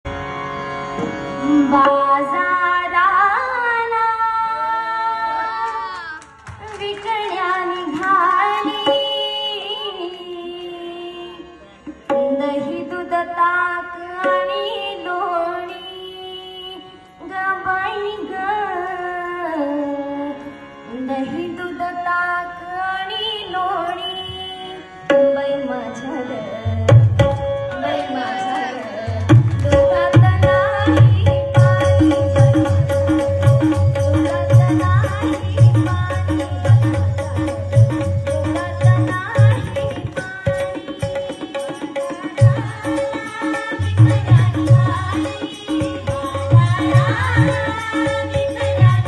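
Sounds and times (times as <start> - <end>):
woman singing: 1.4 - 11.5, 12.2 - 27.1, 27.7 - 49.0
tabla strikes: 6.2 - 11.0, 11.8 - 15.8, 25.0 - 26.0, 26.6 - 49.0.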